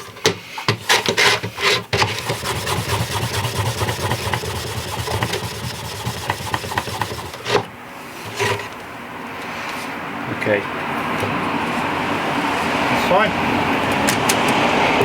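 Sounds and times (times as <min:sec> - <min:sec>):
abrasive rubbing on model track: 0:00.6 - 0:08.8.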